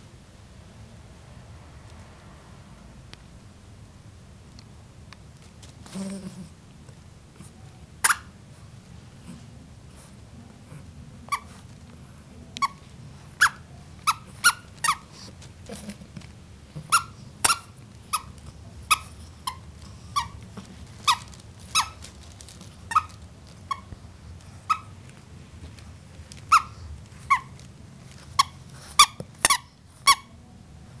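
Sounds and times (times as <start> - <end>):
puppy hiccupping: 13.4 - 22.1.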